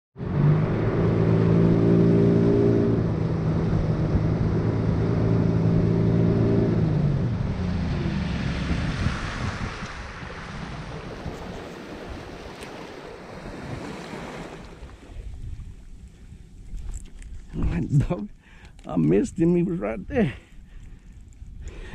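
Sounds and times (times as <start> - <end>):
outboard motor running: 0.7 - 8.8
wind noise: 2.9 - 21.9
water rushing: 7.3 - 15.4.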